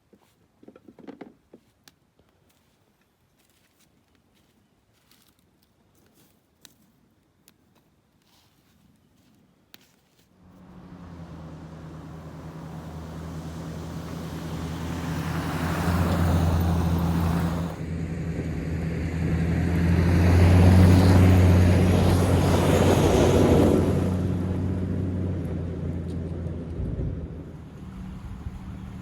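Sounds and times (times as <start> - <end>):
vehicle engine running: 10.4 - 29.0.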